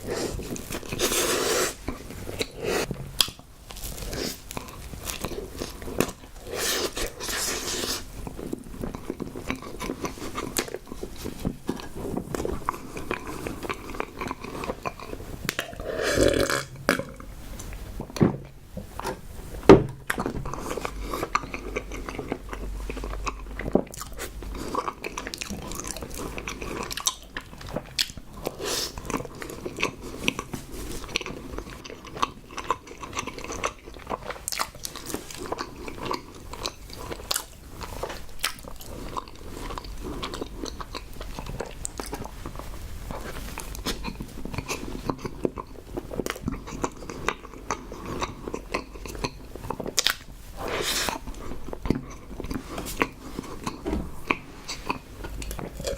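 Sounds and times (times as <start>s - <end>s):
person chewing with wet mouth clicks: 20.1s - 50.3s.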